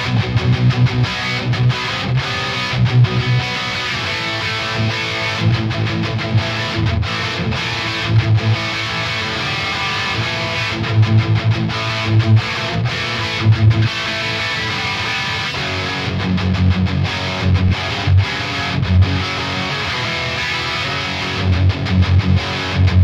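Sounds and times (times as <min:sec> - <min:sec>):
distorted electric guitar riff: 0:00.0 - 0:23.0.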